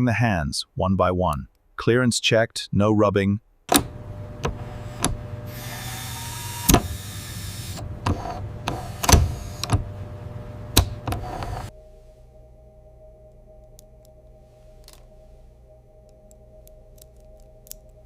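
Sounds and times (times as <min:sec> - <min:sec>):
steady hum: 0:03.7 - 0:18.0.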